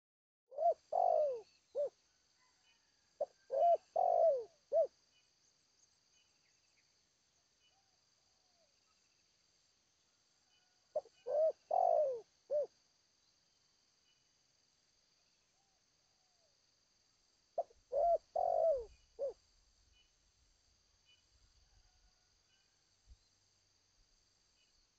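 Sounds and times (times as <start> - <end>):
dove cooing: 0.5 - 2.0, 2.8 - 4.9, 10.9 - 12.7, 17.6 - 19.4.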